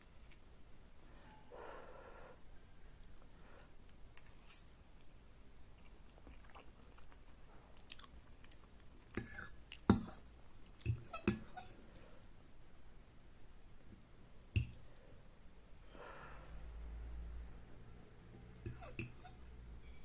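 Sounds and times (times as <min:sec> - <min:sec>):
chewing noodles: 0:05.7 - 0:12.4.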